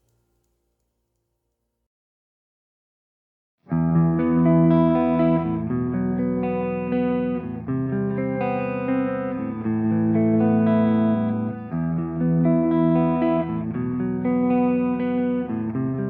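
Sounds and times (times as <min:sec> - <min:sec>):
electric guitar chords: 0:03.7 - 0:16.0.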